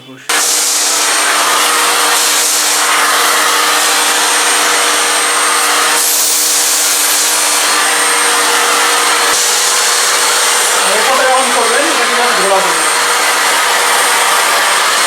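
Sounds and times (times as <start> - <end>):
vacuum cleaner running: 0.3 - 15.0.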